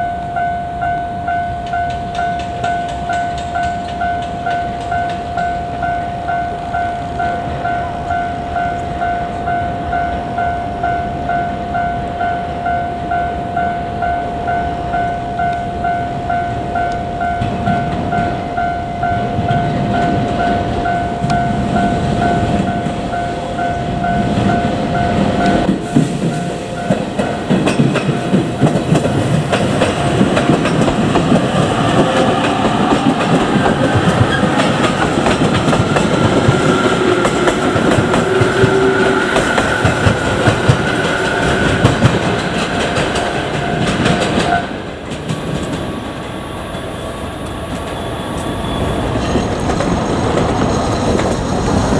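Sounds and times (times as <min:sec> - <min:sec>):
level crossing warning bell: 0:00.0 - 0:51.9
train wheels clattering over rail joints: 0:24.1 - 0:46.3, 0:47.5 - 0:51.9.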